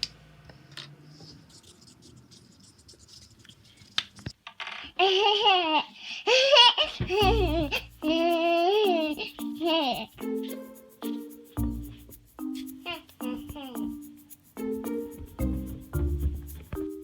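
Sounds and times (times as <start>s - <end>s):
high-pitched wavering voice: 7.2s - 11.3s, 12.6s - 14.2s.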